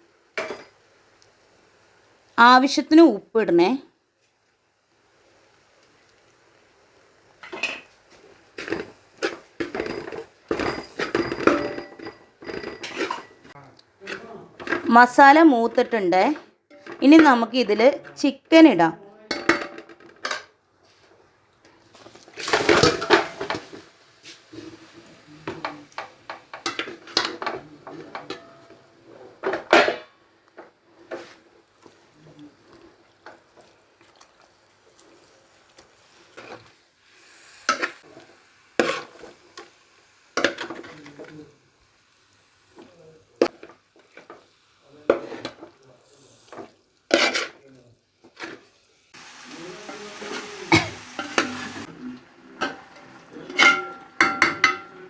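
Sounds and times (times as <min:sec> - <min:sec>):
metal spoon scraping a pan: 0:08.6 - 0:16.0, 0:16.7 - 0:18.4, 0:34.9 - 0:39.8, 0:40.4 - 0:41.5, 0:45.1 - 0:55.0.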